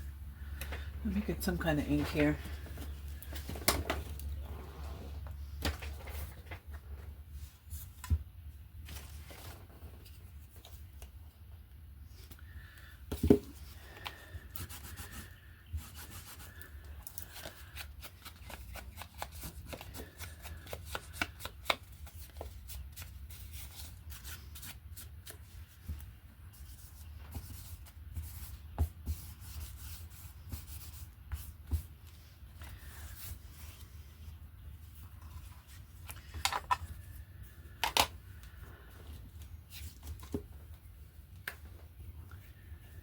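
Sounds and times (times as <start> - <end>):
rubbing and scratching on paper: 14.4 - 25.9, 26.5 - 32.0.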